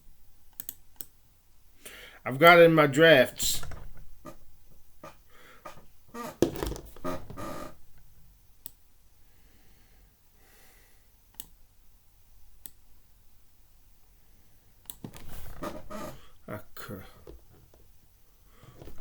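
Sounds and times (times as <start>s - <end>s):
sharp clicks: 0.5s - 1.2s.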